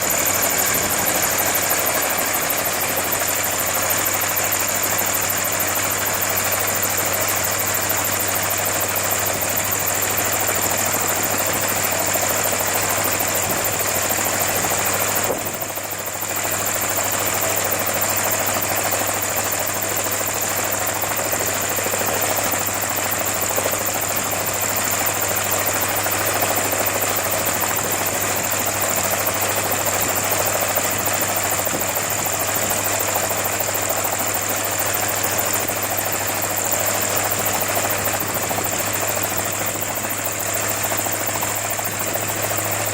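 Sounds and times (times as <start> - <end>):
engine running with high whine: 0.0 - 42.9.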